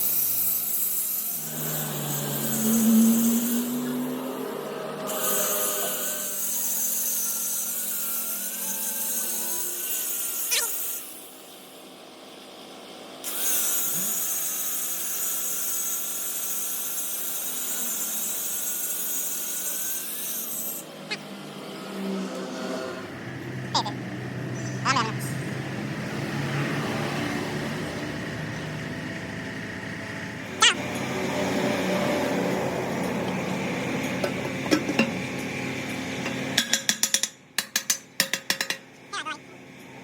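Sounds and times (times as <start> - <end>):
angle grinder on steel: 0.0 - 11.8, 13.2 - 24.0, 30.4 - 37.0.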